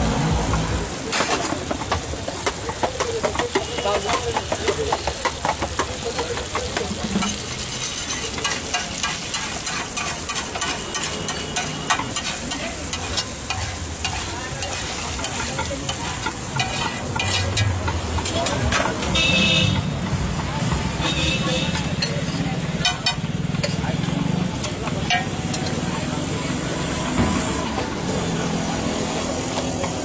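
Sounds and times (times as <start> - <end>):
eggs sizzling in a pan: 1.7 - 18.3
metal spatula scraping a pan: 7.0 - 23.8.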